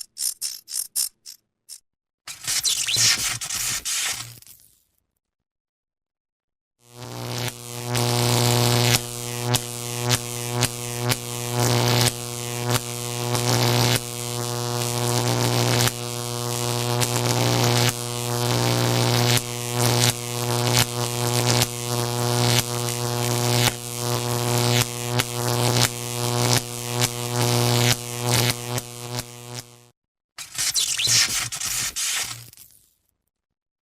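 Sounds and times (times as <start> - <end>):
crackling electric zaps: 2.3 - 4.6, 7.0 - 29.7, 30.4 - 32.8
electrical buzz: 6.9 - 29.8.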